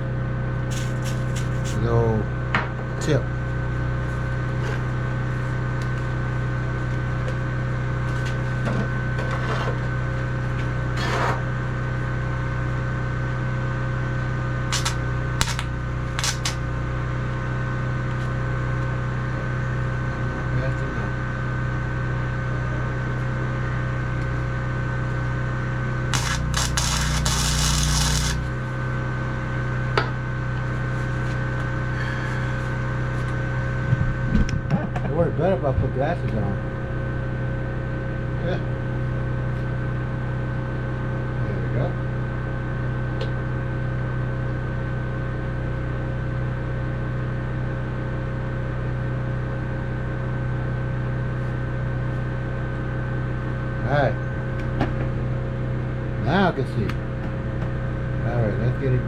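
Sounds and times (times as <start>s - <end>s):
welder electrical hum: 0.0s - 1.9s, 14.6s - 17.4s, 25.9s - 29.1s
sharp clicks: 0.7s - 1.8s, 14.7s - 16.6s, 26.2s - 28.5s
welding hiss and crackle: 0.7s - 1.8s, 14.7s - 16.7s, 26.2s - 28.5s.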